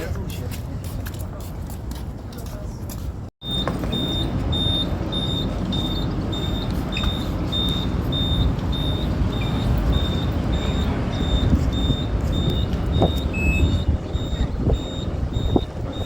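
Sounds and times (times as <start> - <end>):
bus engine rumble: 0.0 - 16.0
high electronic beep: 3.4 - 16.0.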